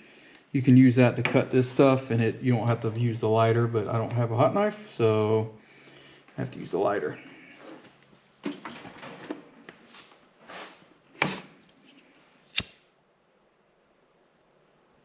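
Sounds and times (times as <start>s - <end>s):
rustles and knocks of wires: 7.8s - 10.3s
sharp click: 12.5s - 12.8s.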